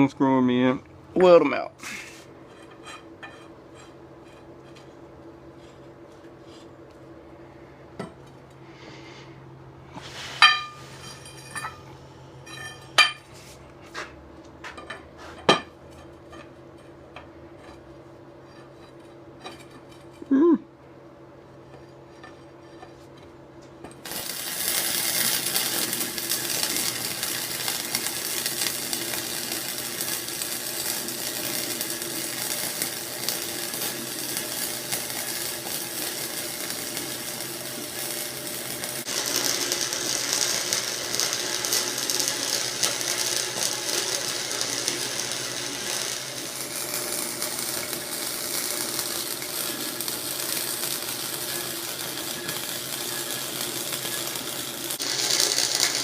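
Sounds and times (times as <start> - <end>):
welder sizzling crackle: 9.9 - 11.8, 24.0 - 56.0.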